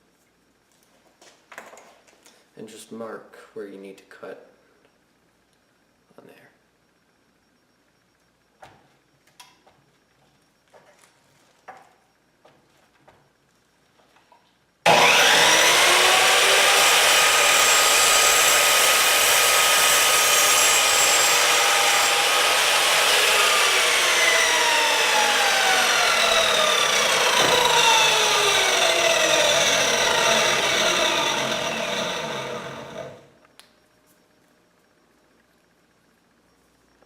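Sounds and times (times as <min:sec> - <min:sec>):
power tool cutting plastic pipe: 0:14.9 - 0:33.3.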